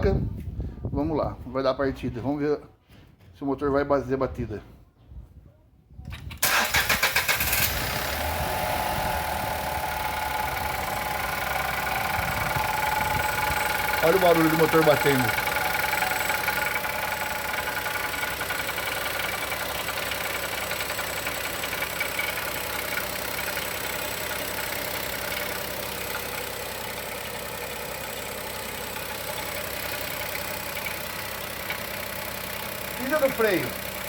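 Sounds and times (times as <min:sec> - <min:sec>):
car engine idling: 0:06.4 - 0:34.0
engine knocking: 0:06.5 - 0:34.0.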